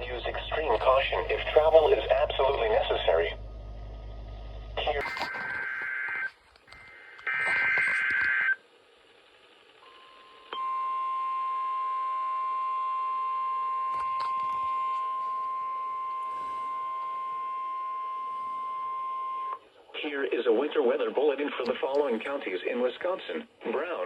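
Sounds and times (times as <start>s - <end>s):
steady warning alarm tone: 9.8s - 19.6s.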